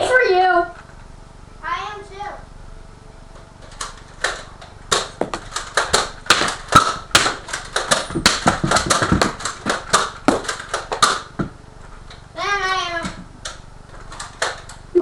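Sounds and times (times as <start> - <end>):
toy dart blasters firing: 3.8 - 11.3
darts hitting surfaces: 4.2 - 11.6.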